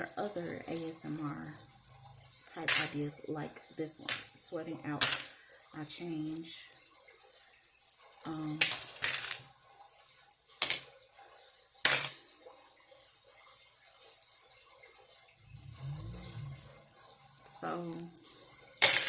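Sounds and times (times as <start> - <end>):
coins clinking: 0.0 - 3.4, 5.0 - 6.4, 7.0 - 10.9, 11.8 - 14.5, 15.6 - 19.0.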